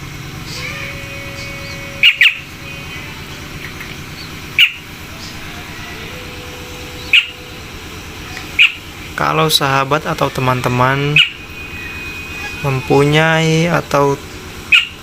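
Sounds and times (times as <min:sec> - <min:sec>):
steady background hum: 0:00.0 - 0:15.0
birds giving short sharp calls: 0:01.6 - 0:02.5, 0:08.5 - 0:08.8, 0:14.7 - 0:15.0.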